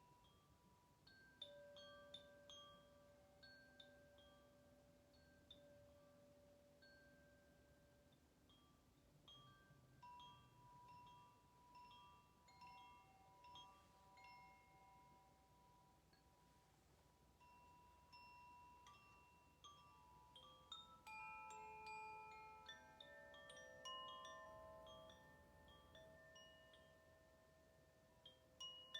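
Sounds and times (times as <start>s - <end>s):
metal chimes ringing: 17.4s - 28.9s.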